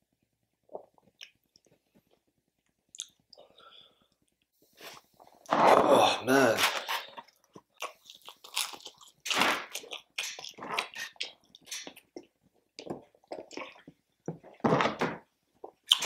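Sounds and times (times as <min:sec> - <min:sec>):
open-mouthed smacking: 0:02.9 - 0:03.4
person crunching and chewing: 0:04.8 - 0:16.0.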